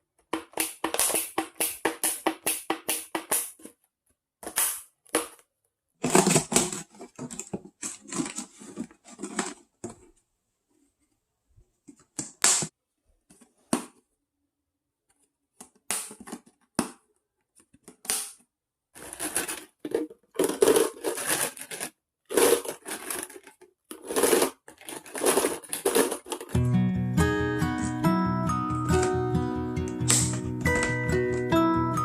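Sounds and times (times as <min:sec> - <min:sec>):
plastic crackling and rustling: 0:06.0 - 0:10.1, 0:19.0 - 0:26.6.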